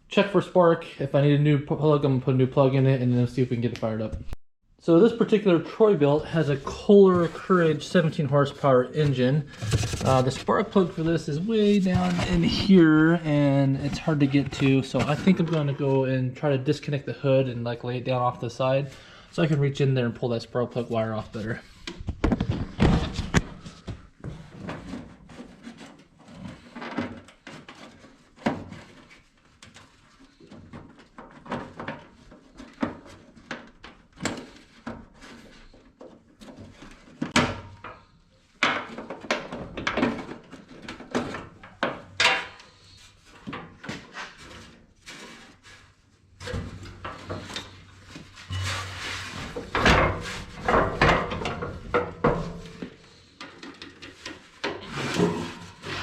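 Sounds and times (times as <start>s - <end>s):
knocks and rattles of hand work: 9.5s - 15.6s, 21.6s - 45.8s, 46.4s - 56.0s.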